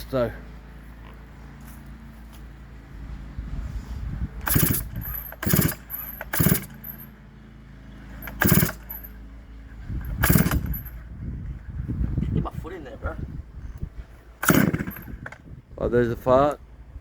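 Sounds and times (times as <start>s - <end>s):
chainsaw recoil starter pulls: 4.4s - 7.1s, 8.2s - 9.2s, 10.0s - 11.0s, 14.4s - 15.5s.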